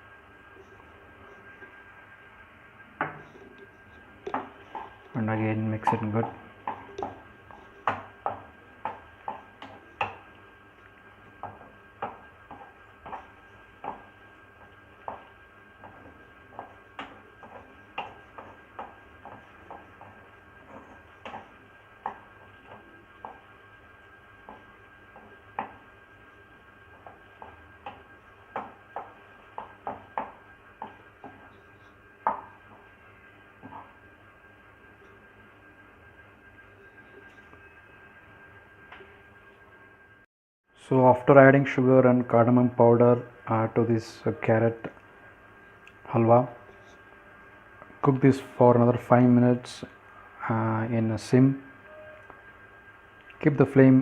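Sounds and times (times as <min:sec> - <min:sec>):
spatula knocking against pan: 0:11.4 - 0:23.5, 0:24.5 - 0:25.8, 0:27.0 - 0:31.5.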